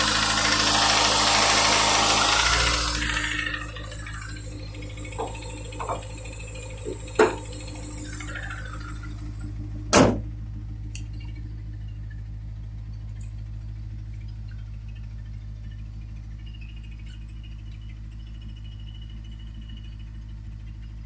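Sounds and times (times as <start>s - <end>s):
car engine idling with ticking: 0.0s - 21.0s
sharp knock: 9.9s - 10.3s.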